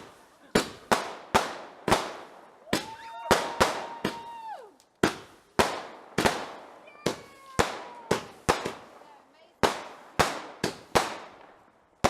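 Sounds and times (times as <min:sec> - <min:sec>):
fireworks bangs: 0:00.0 - 0:11.7
falling firework whistle: 0:02.6 - 0:04.7.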